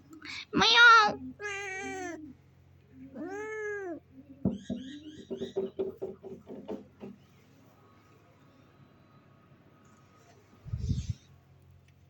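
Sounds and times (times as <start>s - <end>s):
cat meowing: 0.6s - 2.3s.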